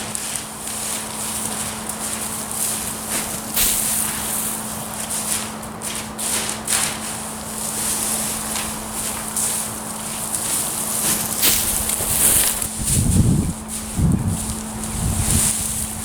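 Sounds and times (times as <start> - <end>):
steady low hum: 0.0 - 16.0
straw bales rustling and crunching: 0.0 - 16.0
footsteps: 1.3 - 16.0.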